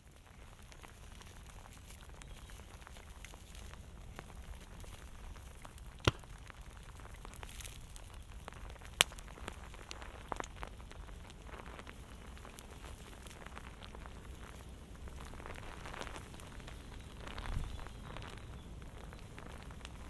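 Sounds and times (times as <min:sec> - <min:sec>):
fire crackling: 0:00.0 - 0:20.0
loud sharp pops: 0:05.6 - 0:07.4.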